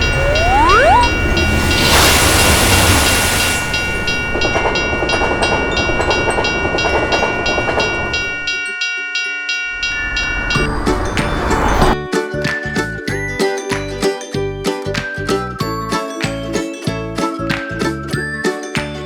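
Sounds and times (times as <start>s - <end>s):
railroad crossing bell ringing: 0.0s - 12.0s
train rumbling and clattering: 1.1s - 8.5s, 9.8s - 12.0s.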